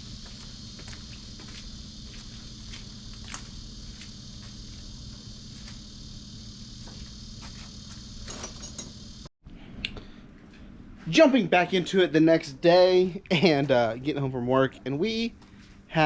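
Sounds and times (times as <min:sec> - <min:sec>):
high-pitched insect chorus: 0:00.0 - 0:09.3
low steady hum: 0:00.0 - 0:16.0.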